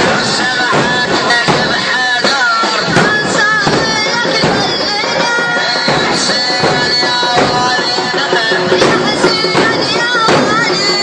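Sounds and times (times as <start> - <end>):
man chanting: 0.0 - 11.0
rhythmic beats: 0.0 - 11.0.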